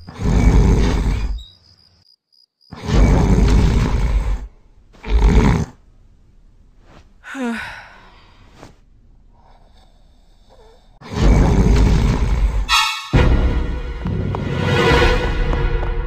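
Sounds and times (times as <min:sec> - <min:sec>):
person snoring loudly: 0:00.1 - 0:01.4, 0:09.5 - 0:12.7
gasping breath: 0:07.2 - 0:11.4.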